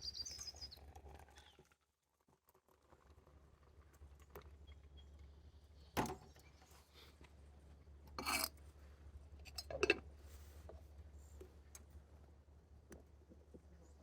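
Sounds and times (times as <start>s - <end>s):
cookware scraping: 8.2s - 8.5s.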